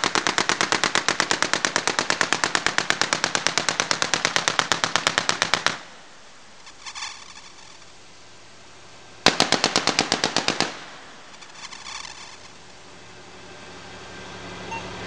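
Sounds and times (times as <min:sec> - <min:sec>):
machine gun firing: 0:06.6 - 0:07.9, 0:09.2 - 0:12.8
faint short rattles: 0:06.6 - 0:08.1, 0:10.0 - 0:12.9.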